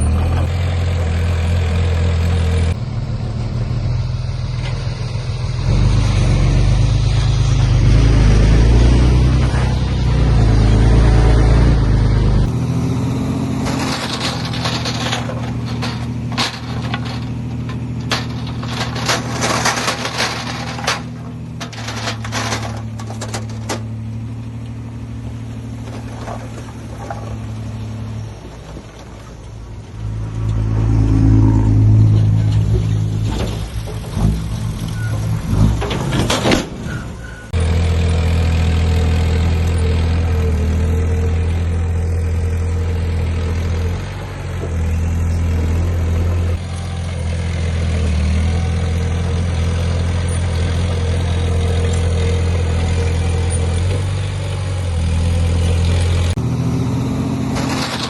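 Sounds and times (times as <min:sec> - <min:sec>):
heavy diesel engines running: 0:00.0 - 0:58.0
sharp knocks and rattles: 0:13.5 - 0:24.7.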